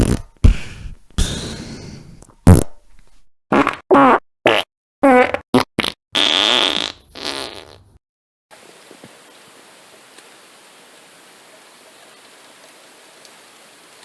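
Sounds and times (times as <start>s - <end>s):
fart sound effects: 0.0s - 0.6s, 2.4s - 2.8s, 3.5s - 8.0s.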